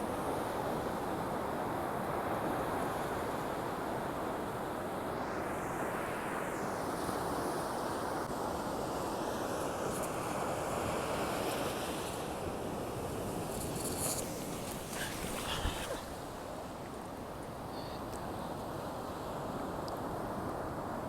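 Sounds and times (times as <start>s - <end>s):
waves breaking on shore: 11.3s - 20.9s.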